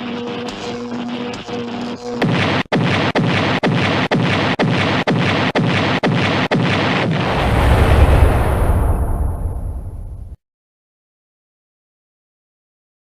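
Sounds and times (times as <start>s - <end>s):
artillery blasts: 6.2s - 10.4s
deep rumbling explosion: 7.1s - 10.4s.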